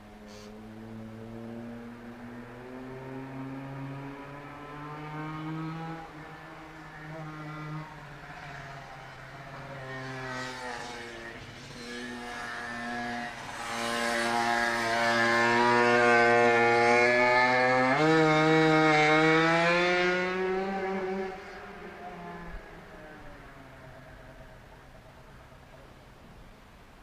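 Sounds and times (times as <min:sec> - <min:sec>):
two-stroke motorcycle engine revving: 0:11.8 - 0:21.4.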